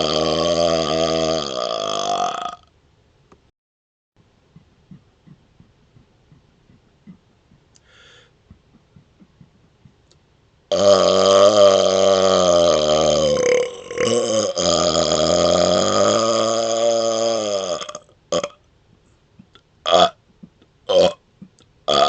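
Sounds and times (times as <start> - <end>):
long loud burp: 0.0 - 2.7, 10.7 - 18.6, 19.9 - 20.2, 20.9 - 21.2
man gulping air: 4.5 - 10.2, 19.3 - 21.7.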